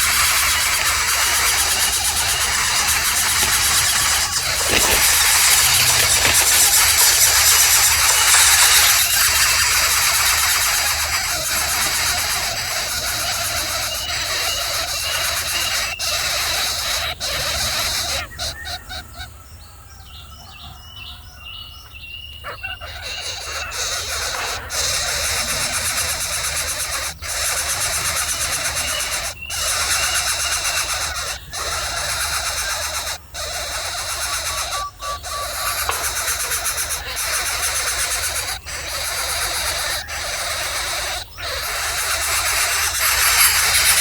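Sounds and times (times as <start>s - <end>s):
bird calling high notes: 0.0s - 11.2s
steady loud hiss: 0.0s - 14.6s.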